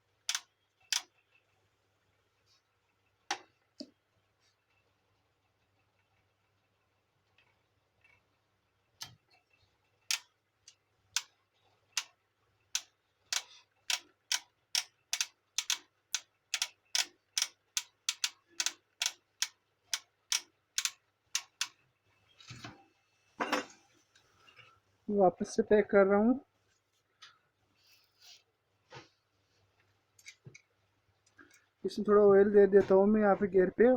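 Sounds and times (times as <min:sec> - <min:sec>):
gear clicking: 0:00.3 - 0:01.2, 0:10.1 - 0:10.4, 0:11.2 - 0:12.2, 0:12.8 - 0:21.8.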